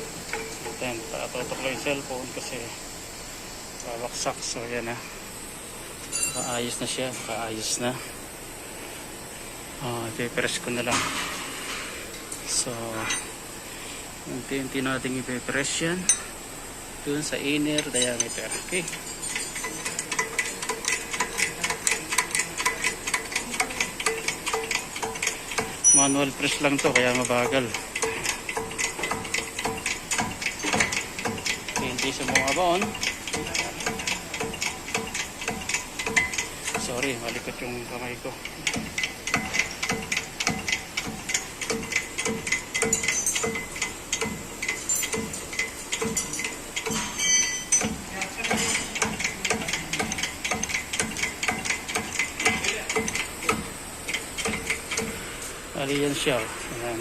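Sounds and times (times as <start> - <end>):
hydraulic press clicking: 17.5 - 37.6, 38.4 - 55.3.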